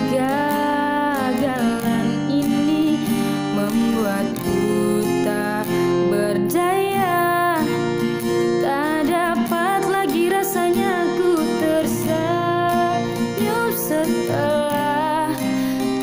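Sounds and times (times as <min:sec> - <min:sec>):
person singing: 0:00.0 - 0:07.9, 0:08.5 - 0:16.0
acoustic guitar strumming: 0:00.0 - 0:16.0.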